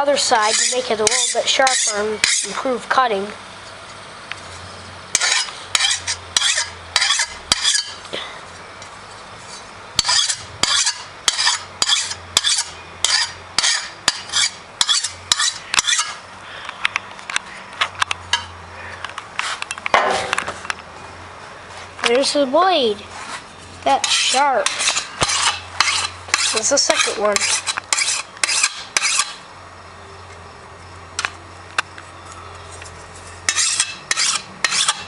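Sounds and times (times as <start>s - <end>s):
file scraping metal blade: 0.2s - 2.6s, 5.1s - 8.0s, 9.4s - 16.2s, 23.3s - 29.4s, 33.2s - 35.0s.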